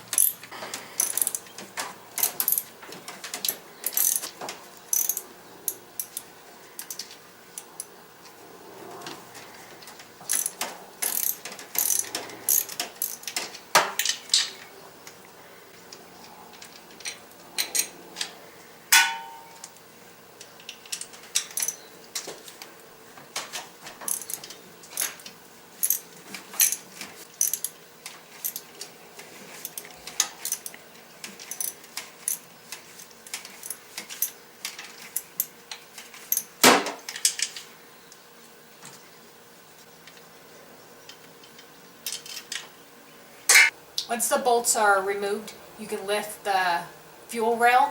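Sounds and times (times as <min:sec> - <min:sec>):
ratchet wrench clicking: 0:00.1 - 0:00.4, 0:01.0 - 0:01.4, 0:02.2 - 0:02.6, 0:03.8 - 0:04.3, 0:04.9 - 0:05.2, 0:06.8 - 0:07.0, 0:10.3 - 0:13.4, 0:20.9 - 0:21.8, 0:24.1 - 0:25.1, 0:25.8 - 0:26.0, 0:27.4 - 0:27.7, 0:31.5 - 0:32.4
loud metal clink: 0:18.9 - 0:19.6.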